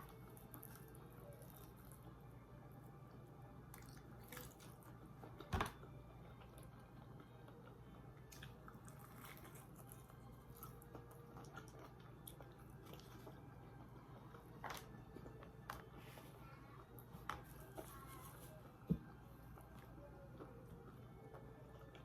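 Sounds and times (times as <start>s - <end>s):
person chewing crunchy food: 3.8s - 5.3s, 6.4s - 15.9s.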